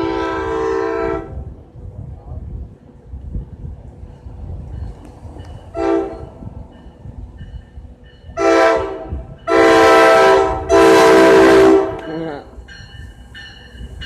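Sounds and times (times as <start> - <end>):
train air horn blasts: 0.0 - 1.5, 5.7 - 6.4, 8.3 - 12.5.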